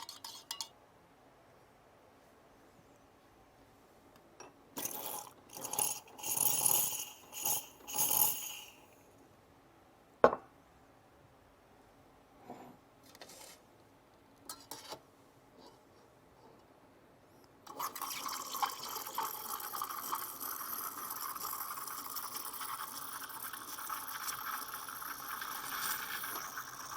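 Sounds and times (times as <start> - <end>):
cups and metal parts clinking: 0.0 - 0.8.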